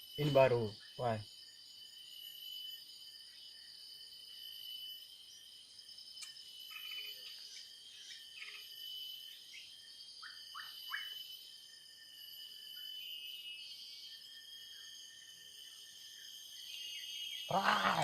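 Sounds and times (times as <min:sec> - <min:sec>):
insects droning: 0:00.0 - 0:18.0
birds chirping: 0:16.6 - 0:18.0.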